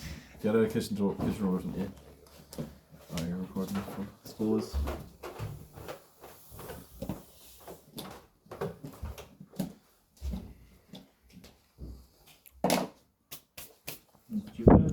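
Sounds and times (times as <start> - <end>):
low thuds: 14.7 - 14.9.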